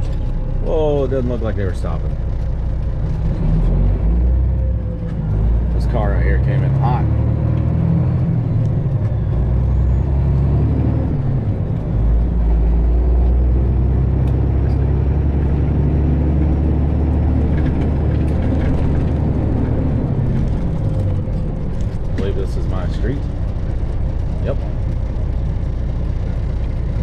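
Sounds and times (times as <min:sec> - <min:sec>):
truck diesel engine drone: 0:00.0 - 0:27.0.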